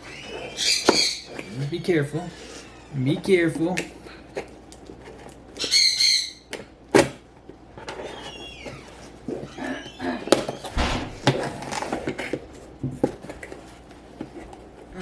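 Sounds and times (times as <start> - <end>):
low thump: 10.8 - 11.2.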